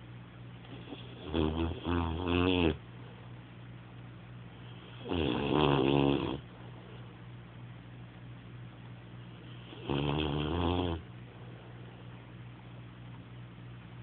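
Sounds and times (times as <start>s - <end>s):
loud snore: 0.8s - 2.8s, 5.0s - 6.4s, 9.7s - 11.0s
quiet breathing: 11.2s - 12.3s.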